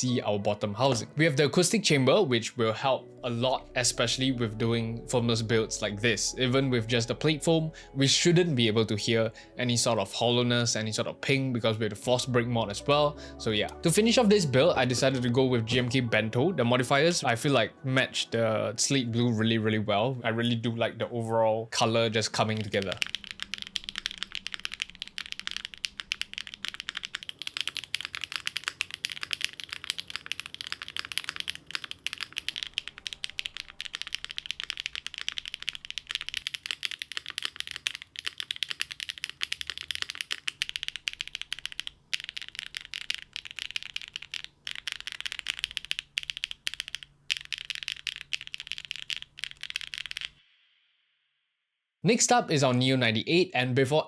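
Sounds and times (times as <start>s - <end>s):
fast mechanical keyboard typing: 22.4s - 50.4s.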